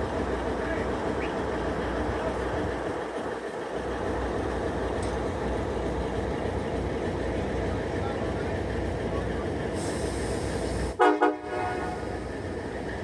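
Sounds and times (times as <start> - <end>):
low diesel drone: 0.0 - 13.0
train wheels rumbling on rails: 0.0 - 13.0.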